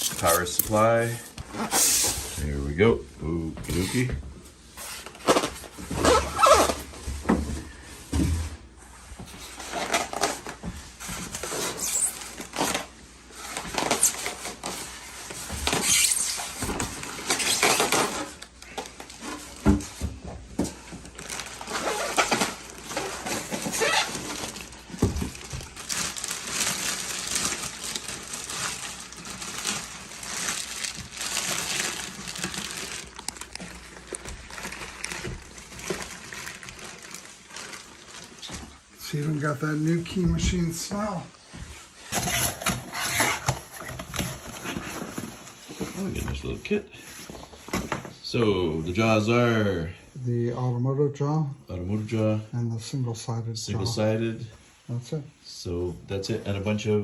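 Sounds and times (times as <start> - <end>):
packaging rustling and crinkling: 0.0 - 2.4, 3.7 - 7.0, 9.2 - 41.2, 41.8 - 48.2.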